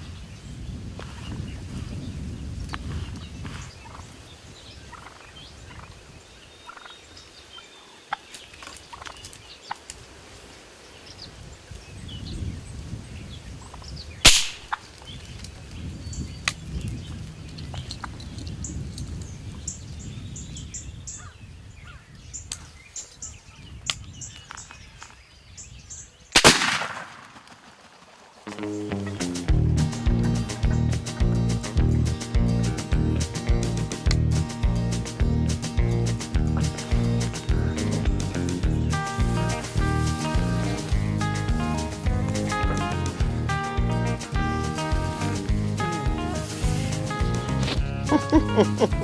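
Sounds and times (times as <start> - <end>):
turkey gobbling: 4.9 - 6.0, 6.7 - 6.9, 47.6 - 49.0.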